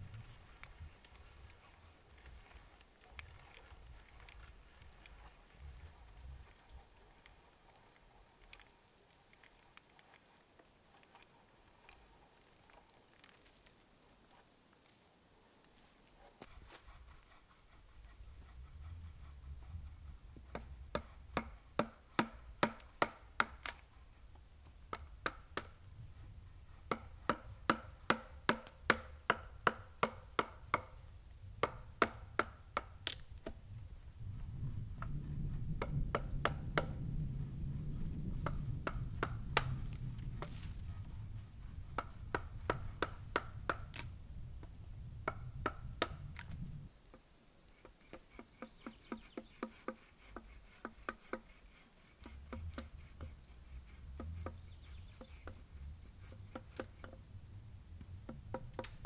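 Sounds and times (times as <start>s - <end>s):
tool chopping into wood: 20.5s - 23.8s, 26.9s - 31.0s, 31.6s - 33.6s, 42.0s - 44.1s, 52.2s - 53.4s, 56.2s - 57.2s.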